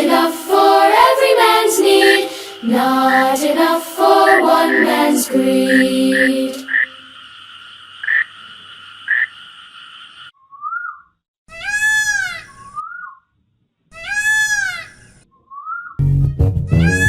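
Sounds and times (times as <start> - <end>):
animal calls: 4.0 - 7.3, 14.0 - 16.0
music: 16.0 - 17.0.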